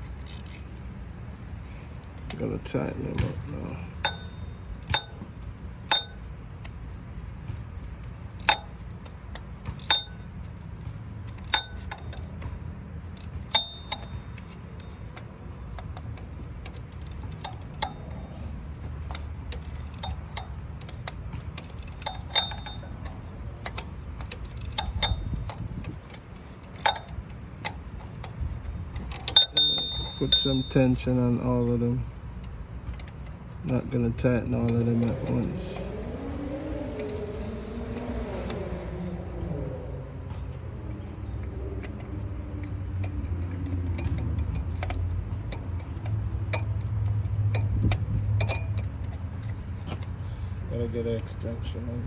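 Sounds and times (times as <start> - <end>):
hand tools clinking on metal: 3.9 - 6.2, 8.4 - 10.3, 13.2 - 16.1, 16.7 - 25.4, 29.0 - 31.4, 33.6 - 35.9.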